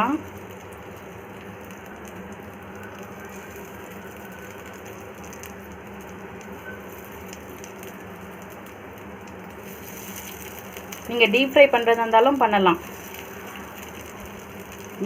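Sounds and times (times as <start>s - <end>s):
food sizzling in hot oil: 0.0s - 15.0s.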